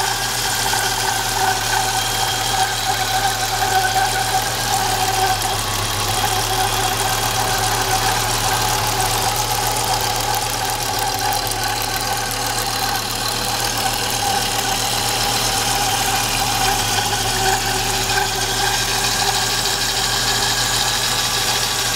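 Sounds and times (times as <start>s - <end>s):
car engine idling: 0.0s - 21.9s
high-pitched squeak: 10.0s - 21.8s.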